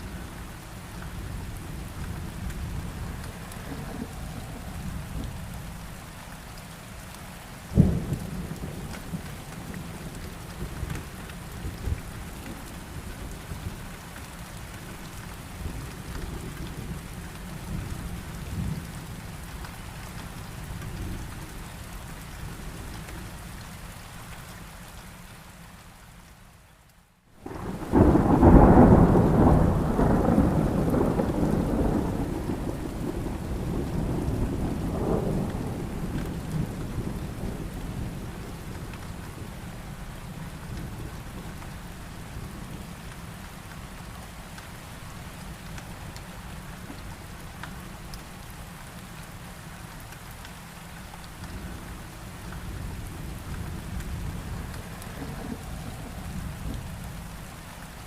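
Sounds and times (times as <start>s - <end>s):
heavy rain falling: 0.0s - 58.0s
thunder cracking and rolling: 27.4s - 38.7s, 52.7s - 57.2s.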